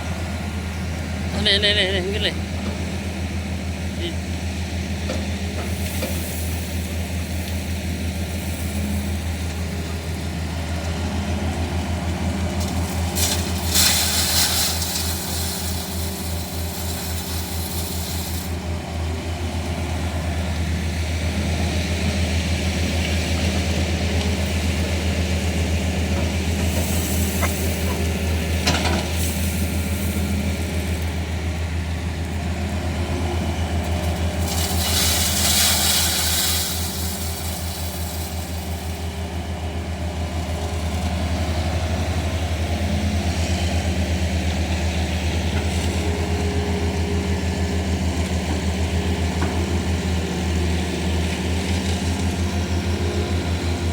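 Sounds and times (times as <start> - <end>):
diesel engine running: 0.0 - 53.9
hiss: 13.2 - 18.6, 26.7 - 28.1, 34.5 - 39.1.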